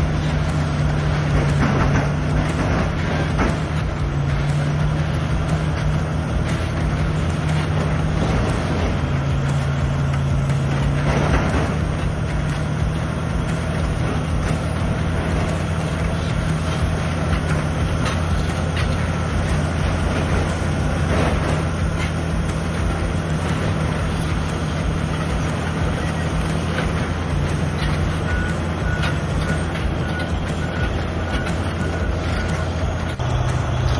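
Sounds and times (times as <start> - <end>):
bulldozer diesel engine: 0.0 - 33.9
metallic clanks: 0.0 - 33.9
reversing alarm beeps: 25.7 - 33.2.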